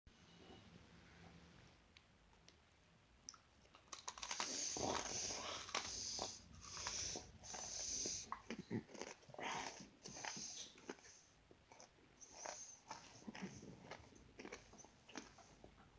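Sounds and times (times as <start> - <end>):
cookie crunching: 3.3 - 11.0, 11.7 - 15.8.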